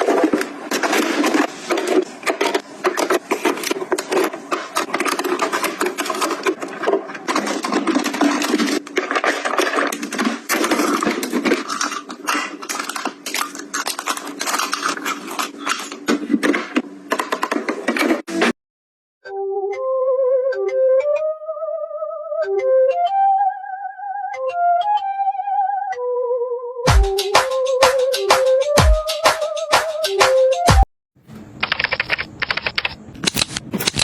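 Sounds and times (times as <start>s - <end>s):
objects rubbed and tapped: 0.0s - 18.5s.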